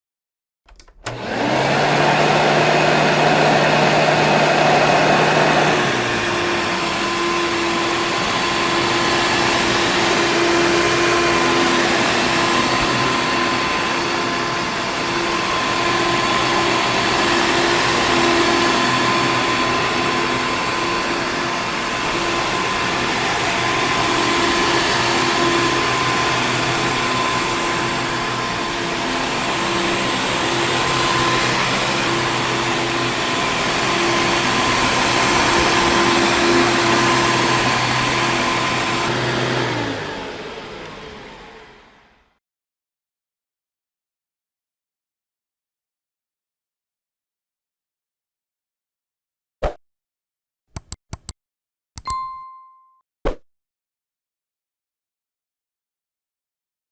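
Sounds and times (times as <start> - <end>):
vacuum cleaner running: 0.8 - 42.4.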